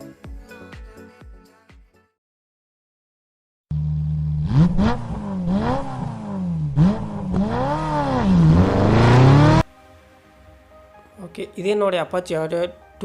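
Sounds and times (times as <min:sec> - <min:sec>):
motorcycle engine revving: 0:03.7 - 0:09.7.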